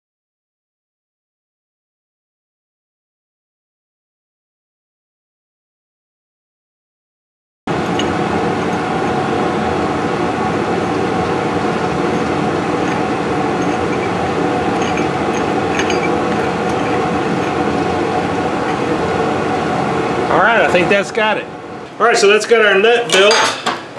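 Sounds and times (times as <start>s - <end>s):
boring bar cutting steel: 7.7s - 20.1s
metal lathe whirring: 7.7s - 22.0s.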